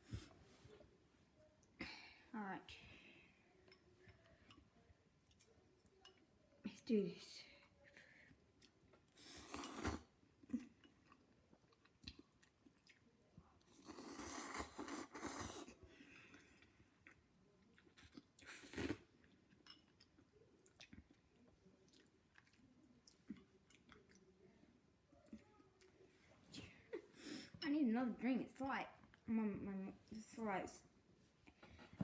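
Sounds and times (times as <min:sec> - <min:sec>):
faint chewing: 0:03.6 - 0:06.3, 0:07.7 - 0:27.6
noodle slurping: 0:09.2 - 0:10.1.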